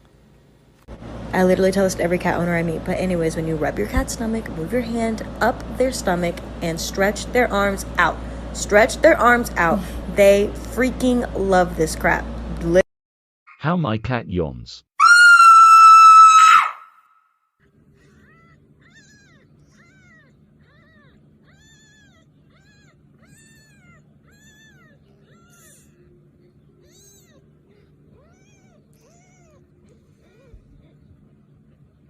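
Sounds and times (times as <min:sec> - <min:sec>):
low steady hum: 0:00.0 - 0:12.8, 0:17.6 - 0:32.0
kitten mewing: 0:18.0 - 0:26.0, 0:26.8 - 0:31.1.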